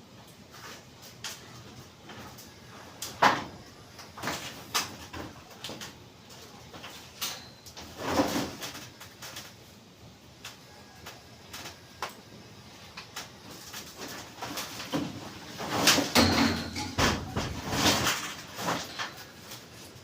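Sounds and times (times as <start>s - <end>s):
hard objects knocking and clattering: 14.2s - 19.2s.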